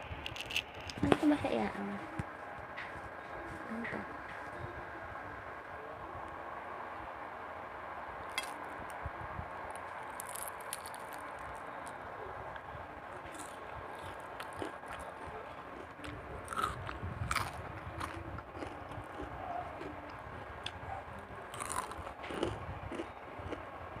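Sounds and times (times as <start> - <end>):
crunching fried onion rings: 0.0 - 1.1, 8.3 - 9.0, 9.6 - 23.6.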